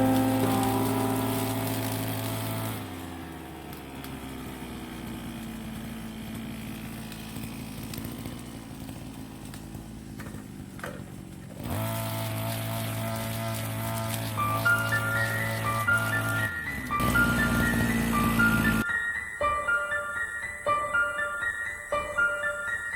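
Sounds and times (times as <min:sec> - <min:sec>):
background music: 0:00.0 - 0:03.3, 0:14.2 - 0:22.9
brush cutter engine running: 0:00.0 - 0:18.9.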